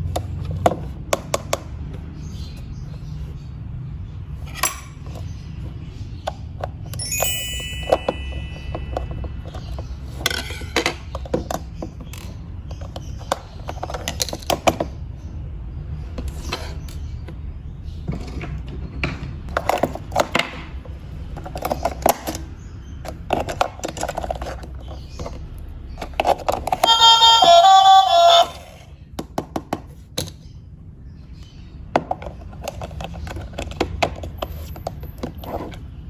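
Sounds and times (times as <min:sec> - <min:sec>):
plastic toy clicks and rattles: 0:26.0 - 0:28.2.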